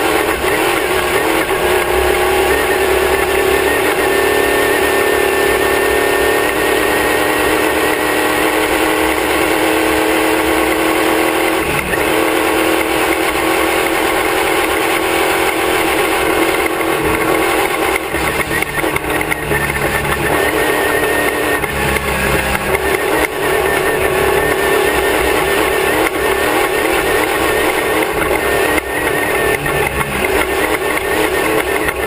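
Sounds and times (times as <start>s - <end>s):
race car engine running hard: 0.0s - 32.0s.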